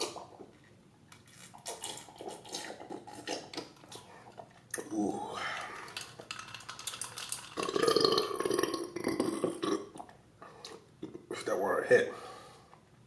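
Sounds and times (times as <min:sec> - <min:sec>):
man belching: 0:07.6 - 0:10.0.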